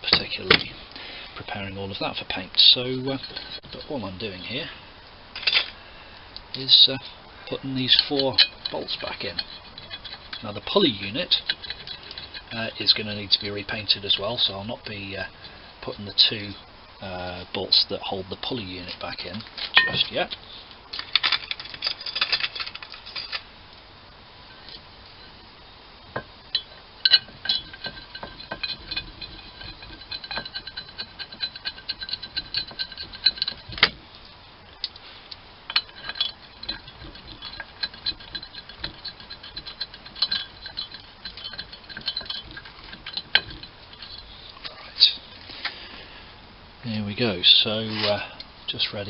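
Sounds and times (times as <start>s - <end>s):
metallic clinks of bolts: 35.7s - 44.6s.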